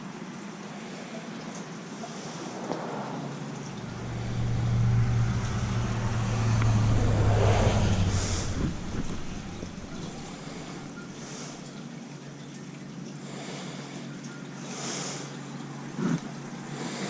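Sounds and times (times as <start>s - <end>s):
car passing by: 2.3s - 11.5s.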